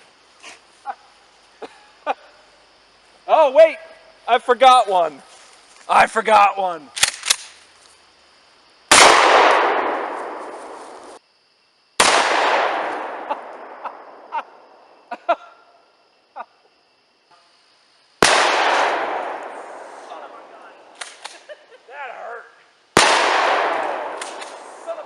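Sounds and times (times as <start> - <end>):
shotgun blasts echoing: 8.9 - 11.2, 12.0 - 14.3, 18.2 - 20.3, 23.0 - 24.9.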